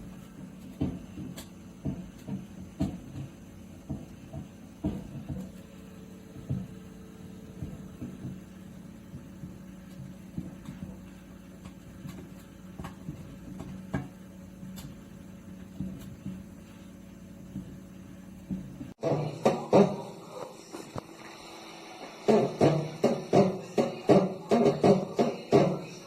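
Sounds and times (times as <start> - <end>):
bumping knocks: 0.0 - 20.1
microwave oven humming: 0.0 - 26.0.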